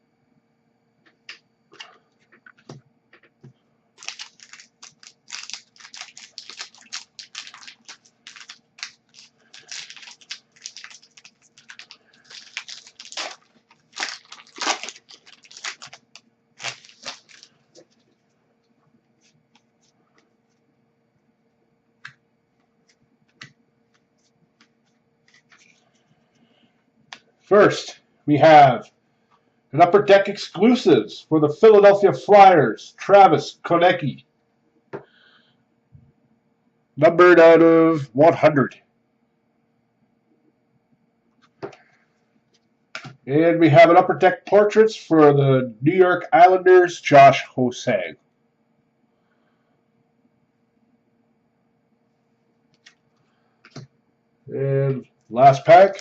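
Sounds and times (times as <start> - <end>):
card pack wrapper tearing: 4.0 - 17.5, 55.8 - 56.0.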